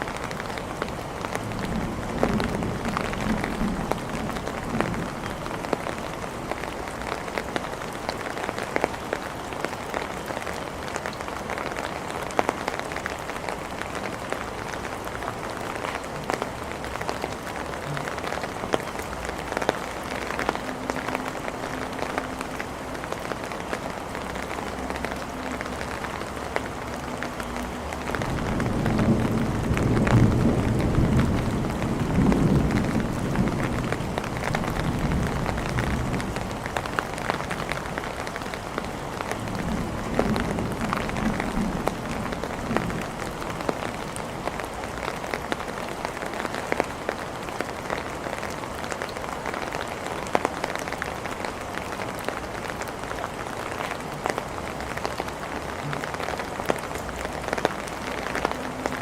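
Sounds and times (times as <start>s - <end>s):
rain on hard surfaces: 0.0s - 59.0s
low roll of thunder: 28.1s - 36.7s.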